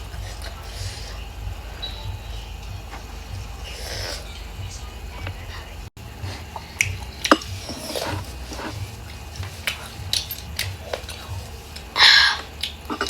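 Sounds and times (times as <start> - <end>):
wet chewing: 0.0 - 13.0
utensil clicking against dish: 6.1 - 13.0.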